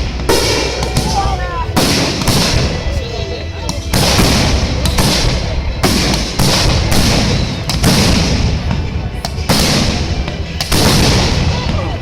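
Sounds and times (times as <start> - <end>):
fireworks bangs: 0.0 - 12.0.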